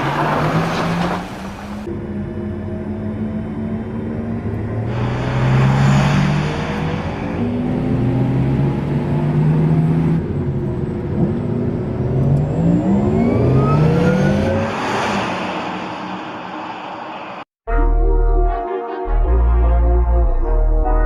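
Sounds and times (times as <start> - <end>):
tyre and road noise: 0.0 - 2.0.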